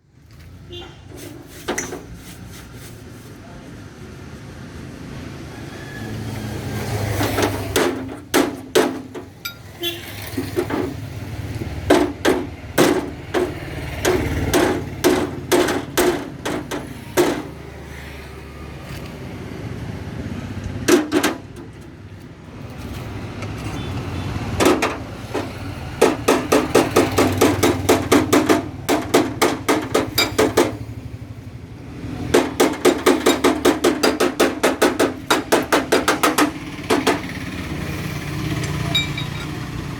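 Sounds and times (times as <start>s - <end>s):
hammer striking sheet metal: 7.2s - 9.6s, 11.8s - 17.6s, 24.6s - 30.9s, 32.3s - 37.4s.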